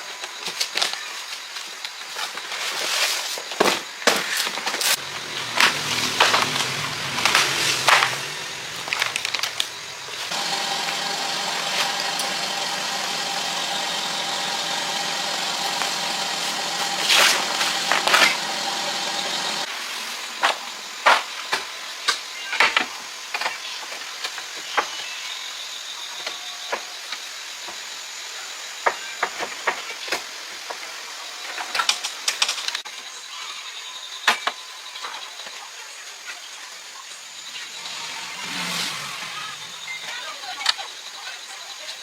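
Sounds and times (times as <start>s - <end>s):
engine running: 4.9s - 19.7s, 37.4s - 41.0s.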